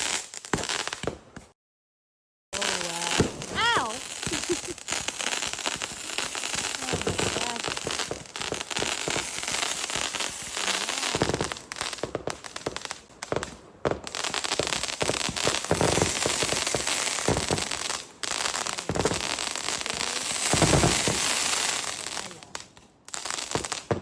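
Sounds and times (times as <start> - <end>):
fireworks crackling: 0.0 - 1.5, 2.6 - 24.0.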